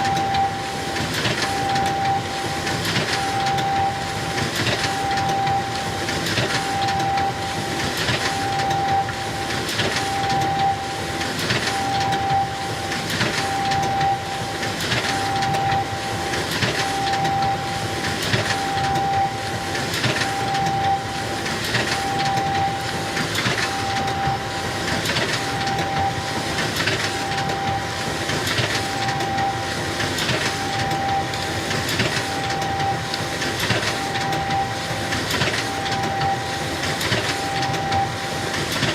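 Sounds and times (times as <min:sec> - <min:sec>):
photocopier running hum: 0:00.0 - 0:38.9
photocopier whine: 0:00.0 - 0:38.9.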